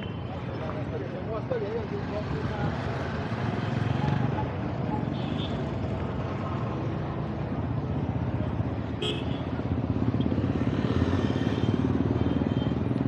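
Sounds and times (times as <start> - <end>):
motorcycle engines running: 0.0 - 13.0
street traffic: 0.0 - 13.0.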